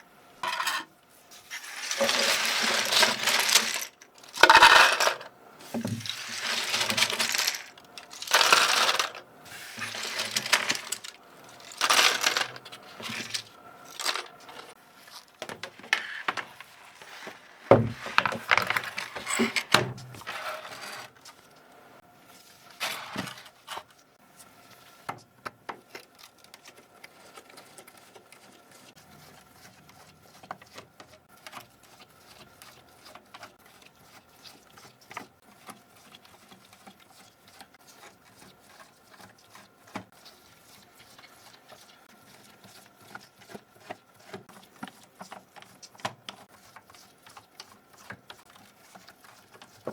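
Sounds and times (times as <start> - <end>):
plastic keyboard parts clattering: 1.9 - 9.2, 9.8 - 14.7, 15.3 - 21.0.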